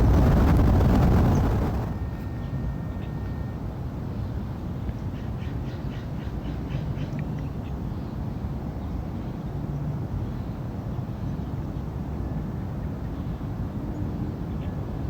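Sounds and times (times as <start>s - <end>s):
jet airliner rumble: 0.0s - 2.9s.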